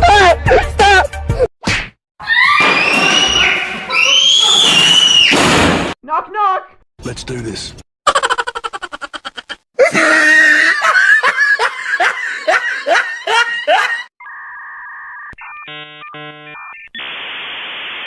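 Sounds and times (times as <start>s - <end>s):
shrieking laughter with yelps: 8.1s - 15.3s
synthesized beeps: 14.2s - 17.1s.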